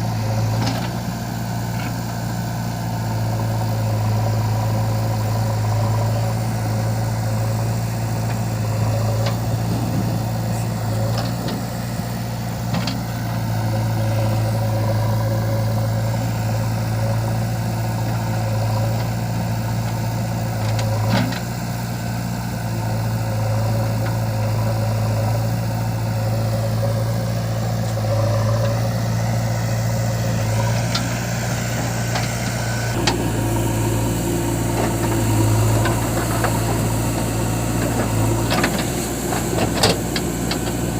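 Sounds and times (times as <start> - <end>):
diesel engine idling: 0.0 - 40.9.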